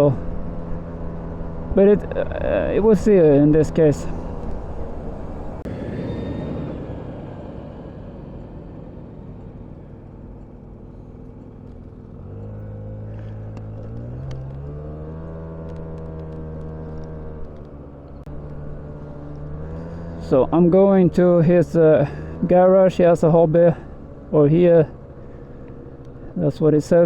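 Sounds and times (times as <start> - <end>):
car engine accelerating: 0.0 - 27.0.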